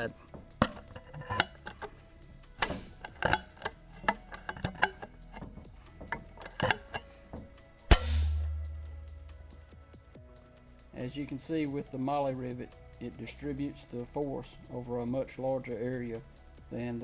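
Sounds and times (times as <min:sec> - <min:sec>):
rivet tool clicks: 0:00.6 - 0:01.9, 0:02.6 - 0:05.5, 0:06.1 - 0:07.1
rivet mandrel snapping: 0:00.6 - 0:02.0, 0:02.6 - 0:05.5, 0:06.1 - 0:07.1, 0:07.9 - 0:09.4.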